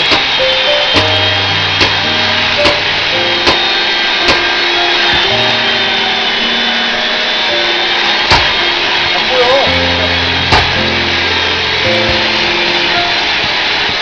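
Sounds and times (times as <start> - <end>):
background music with held notes: 0.0 - 14.0
axe splitting firewood: 10.5 - 10.7.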